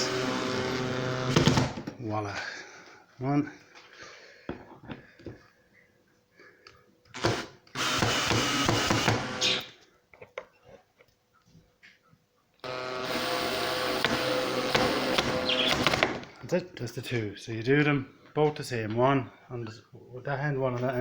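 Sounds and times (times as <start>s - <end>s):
cordless screw gun running: 0.0s - 1.7s, 7.2s - 9.7s, 12.6s - 16.2s.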